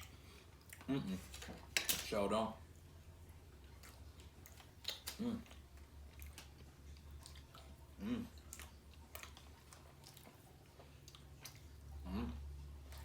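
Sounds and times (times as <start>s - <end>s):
person chewing: 3.6s - 13.0s.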